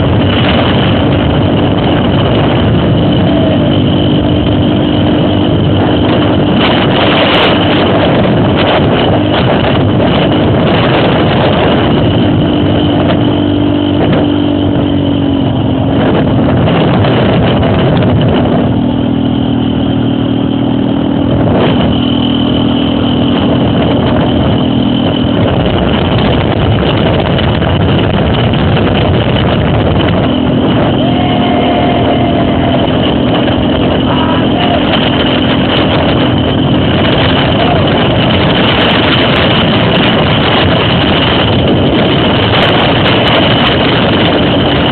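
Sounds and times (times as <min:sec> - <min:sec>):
loud steady rushing noise: 0:00.0 - 0:44.9
motorcycle engine running: 0:00.0 - 0:44.9.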